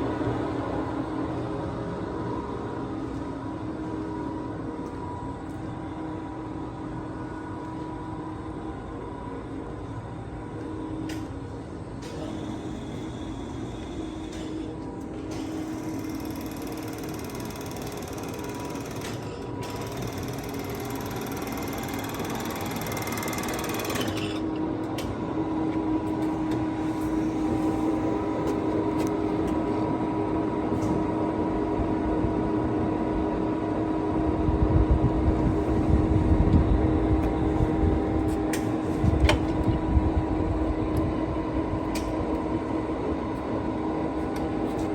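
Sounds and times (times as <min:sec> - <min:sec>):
gear whine: 0:12.0 - 0:24.6
lathe humming: 0:15.4 - 0:24.4.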